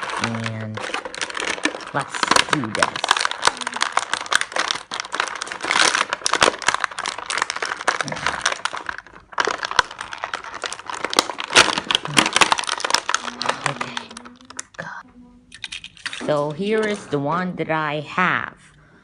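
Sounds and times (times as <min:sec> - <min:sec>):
plastic packaging crinkling and tearing: 0:00.0 - 0:15.0.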